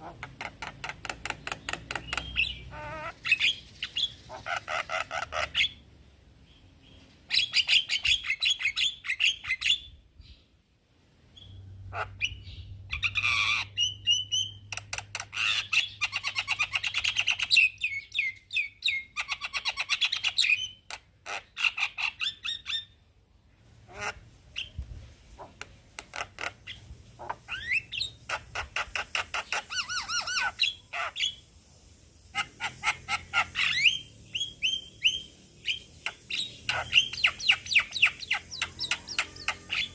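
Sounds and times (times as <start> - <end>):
bird harsh chattering: 0.0 - 5.8, 25.4 - 31.4, 32.3 - 39.9.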